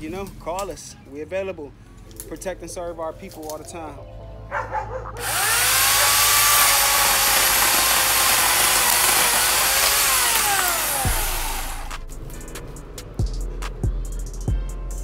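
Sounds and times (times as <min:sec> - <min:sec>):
chainsaw revving: 0:05.2 - 0:12.0.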